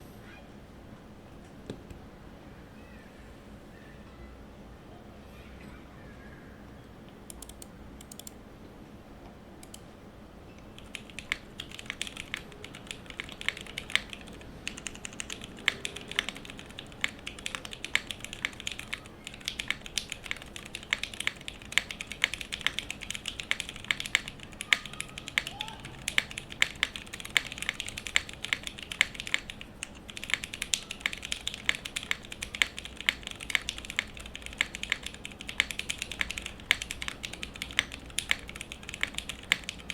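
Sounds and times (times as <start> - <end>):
typing on mechanical keyboard: 7.3 - 8.4, 10.6 - 39.9.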